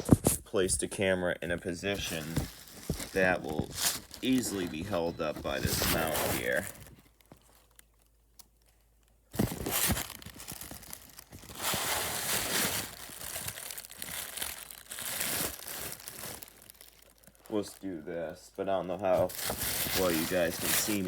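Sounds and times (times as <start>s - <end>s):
rustling against microphone: 1.9s - 7.7s, 19.1s - 21.0s.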